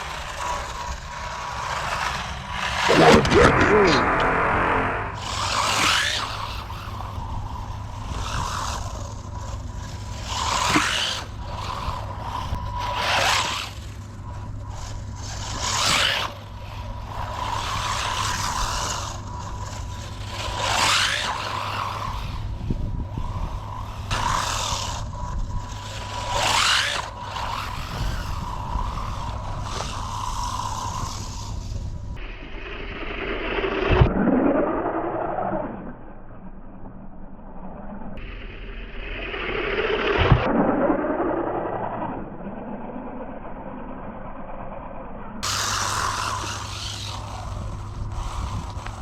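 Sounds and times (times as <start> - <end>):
rc car motor whining: 0.0 - 49.0.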